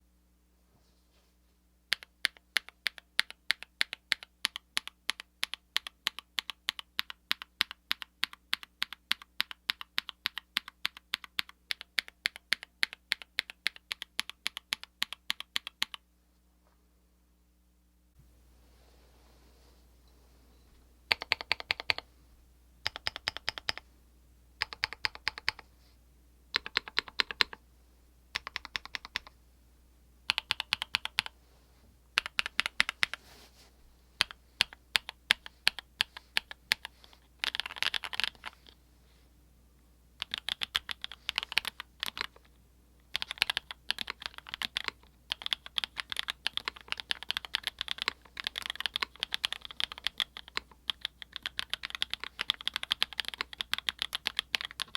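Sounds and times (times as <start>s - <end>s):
mechanical keyboard typing: 1.9s - 16.0s, 21.1s - 22.0s, 22.8s - 23.8s, 24.6s - 25.6s, 26.5s - 27.6s, 28.4s - 29.3s, 30.3s - 31.3s, 32.2s - 33.2s, 34.2s - 38.8s, 40.2s - 42.5s, 43.1s - 54.9s.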